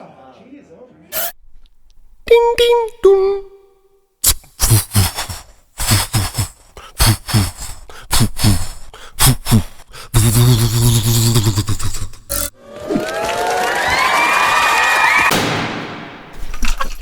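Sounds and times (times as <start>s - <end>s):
beatboxing: 4.2s - 12.6s.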